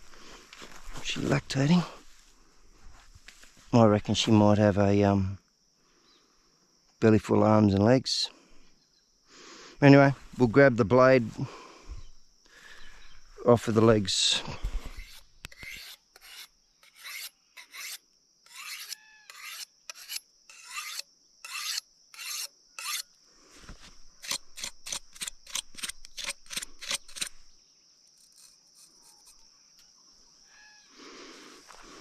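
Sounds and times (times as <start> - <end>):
high insect buzz: 14.5 - 32.0
knife blade rasping: 14.9 - 23.0, 28.2 - 29.4.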